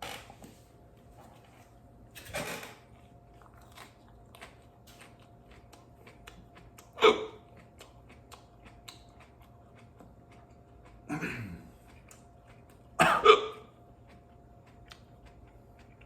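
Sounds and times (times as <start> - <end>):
chewing with crunching clicks: 2.8 - 16.0
man hiccuping: 7.0 - 7.4, 11.1 - 11.7, 13.0 - 13.7.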